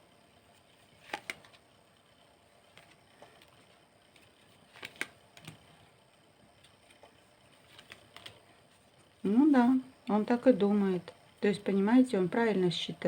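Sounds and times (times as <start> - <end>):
cards tapping and clicking: 1.0 - 1.6, 2.7 - 5.7, 6.6 - 8.4.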